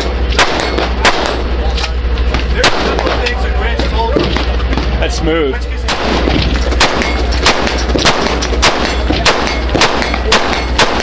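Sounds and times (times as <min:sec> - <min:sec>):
faint gunshots: 0:00.0 - 0:01.6, 0:02.4 - 0:03.3, 0:05.9 - 0:11.0
rifle shots: 0:00.0 - 0:01.6, 0:02.5 - 0:03.4, 0:05.9 - 0:11.0.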